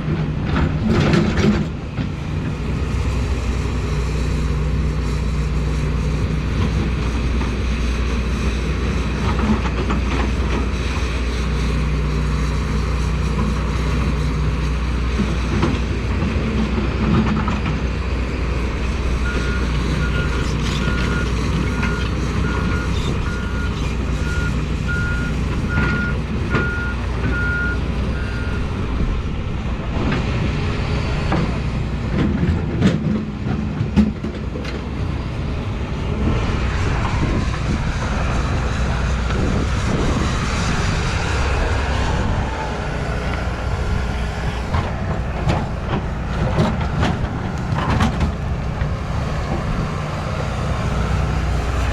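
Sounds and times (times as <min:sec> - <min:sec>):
diesel engine running: 0:00.0 - 0:51.9
reversing alarm beeping: 0:19.2 - 0:28.7.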